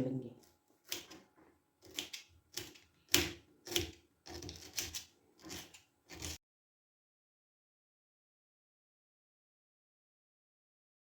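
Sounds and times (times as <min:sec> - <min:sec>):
knife chopping on cutting board: 0:01.8 - 0:06.4.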